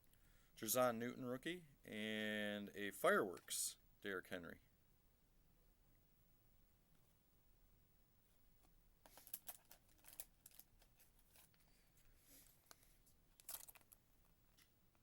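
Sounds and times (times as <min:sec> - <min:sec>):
trading cards rustling and clicking: 0:09.0 - 0:15.0.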